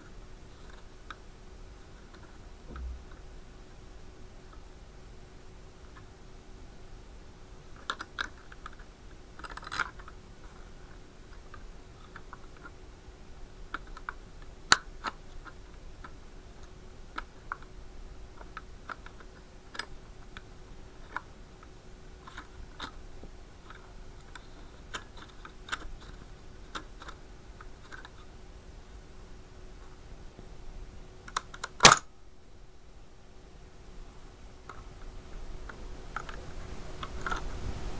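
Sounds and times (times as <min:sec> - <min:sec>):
faint steady hum: 0:00.0 - 0:37.9
sharp click: 0:31.3 - 0:32.1.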